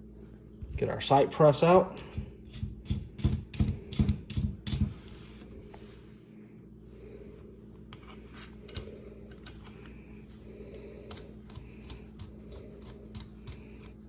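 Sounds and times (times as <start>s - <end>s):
faint rubbing and handling noises: 4.8s - 14.0s.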